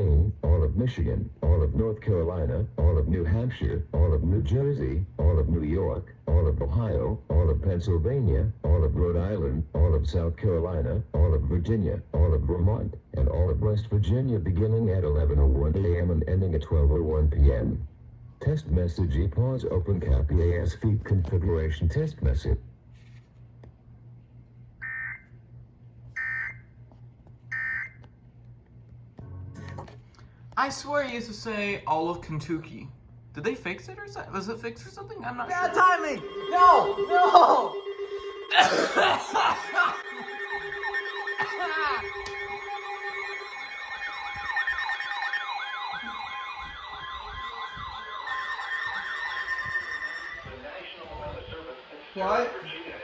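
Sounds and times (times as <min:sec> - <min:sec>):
electronic siren yelping: 0:24.8 - 0:25.4, 0:26.1 - 0:26.8, 0:27.5 - 0:28.1, 0:35.4 - 0:50.6
digital data tone bursts: 0:35.2 - 0:50.8.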